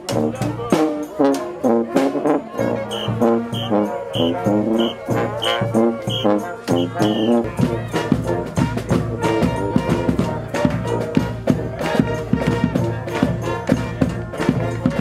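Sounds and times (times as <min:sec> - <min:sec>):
brass band playing: 0:00.0 - 0:15.0
short high note repeating: 0:02.9 - 0:07.4
drum beat: 0:02.9 - 0:12.9.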